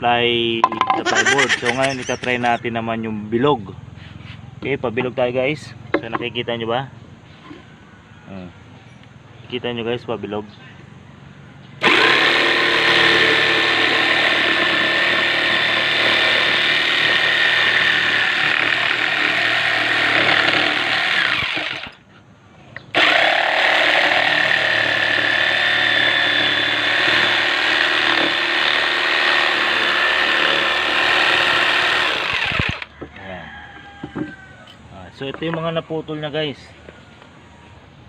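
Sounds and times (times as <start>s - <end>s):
jigsaw cutting plywood: 1.1s - 2.5s, 11.8s - 21.9s, 23.0s - 32.9s.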